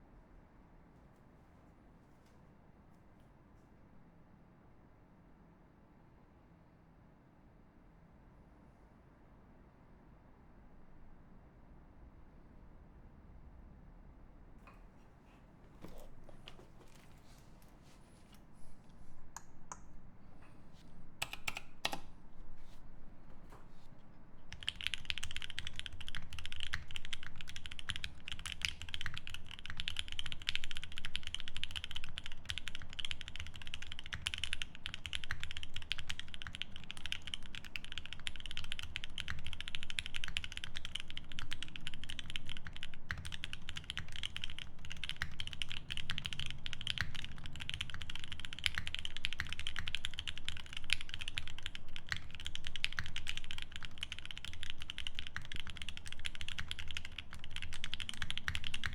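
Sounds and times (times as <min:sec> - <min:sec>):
fast typing on keyboard: 0:21.2 - 0:22.1, 0:24.4 - 0:58.9.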